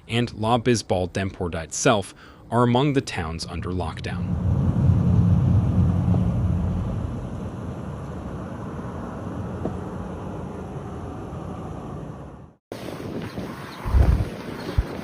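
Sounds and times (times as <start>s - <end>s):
low outdoor rumble: 3.0s - 12.6s.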